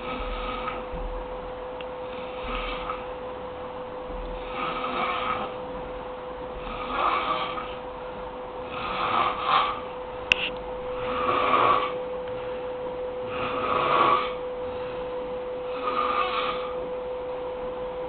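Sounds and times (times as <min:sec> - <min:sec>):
man snoring loudly: 0:00.0 - 0:00.8, 0:02.1 - 0:03.1, 0:04.4 - 0:05.5, 0:06.5 - 0:07.8, 0:08.6 - 0:09.9, 0:11.0 - 0:12.0, 0:13.2 - 0:14.4, 0:15.6 - 0:16.8
steady hum: 0:00.0 - 0:18.0.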